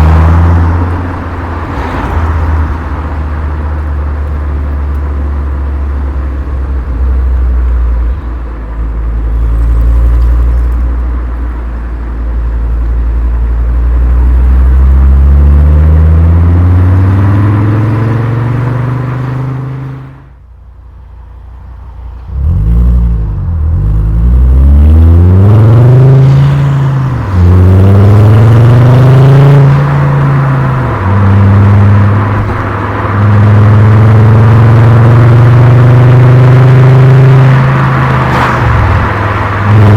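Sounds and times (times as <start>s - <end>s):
car engine revving: 0.0s - 20.3s, 21.6s - 39.9s.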